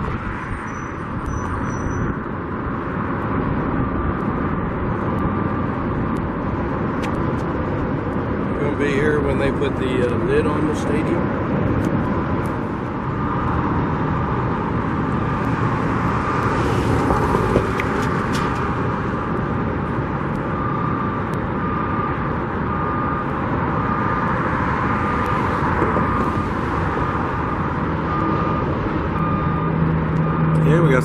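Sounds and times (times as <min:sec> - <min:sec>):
vehicles: 0:00.0 - 0:31.0.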